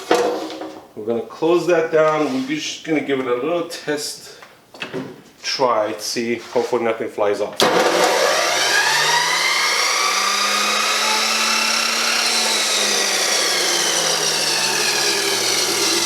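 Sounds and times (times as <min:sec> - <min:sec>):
saw motor whine: 0:07.6 - 0:16.0.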